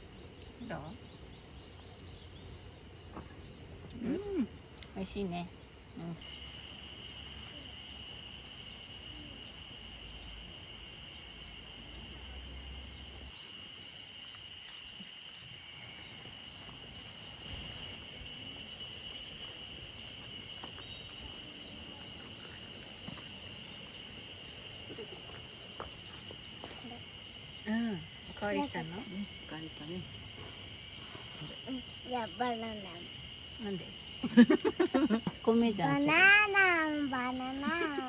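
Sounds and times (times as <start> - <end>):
high-pitched insect drone: 13.3 - 38.0.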